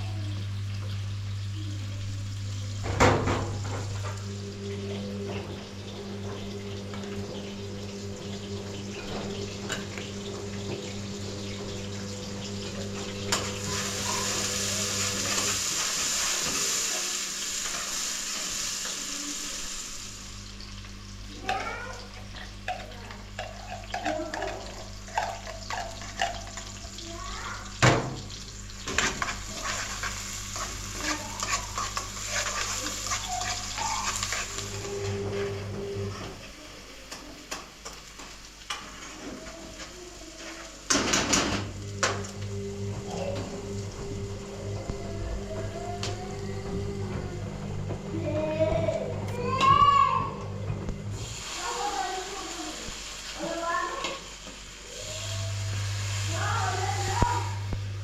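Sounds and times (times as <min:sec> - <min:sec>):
steady low hum: 0:00.0 - 0:16.0, 0:40.4 - 0:52.9
food sizzling in a pan: 0:00.0 - 0:44.4, 0:51.1 - 0:58.0.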